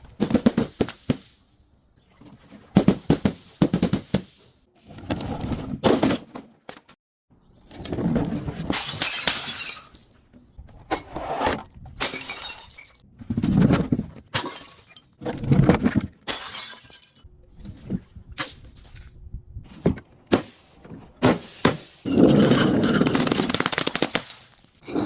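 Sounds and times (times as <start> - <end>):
glass smashing and crunching: 8.7 - 10.2, 12.0 - 13.0, 14.4 - 15.2, 16.3 - 17.2, 22.1 - 24.9.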